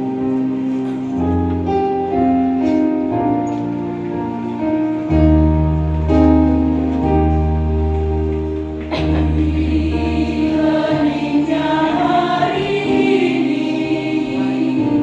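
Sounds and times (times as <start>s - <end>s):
keyboard playing held chords: 0.0s - 15.0s.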